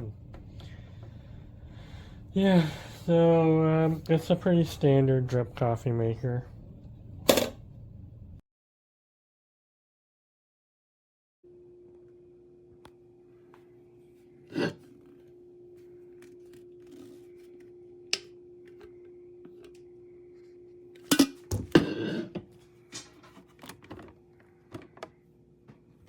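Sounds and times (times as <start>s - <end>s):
electrical hum: 0.0s - 8.4s, 11.5s - 26.0s.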